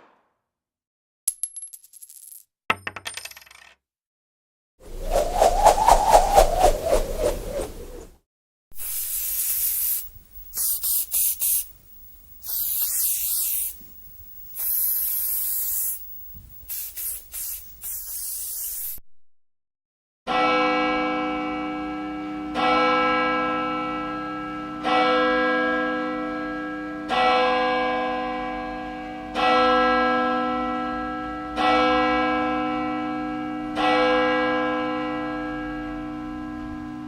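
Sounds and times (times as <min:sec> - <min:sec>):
church bell tolling: 0:20.3 - 0:37.0.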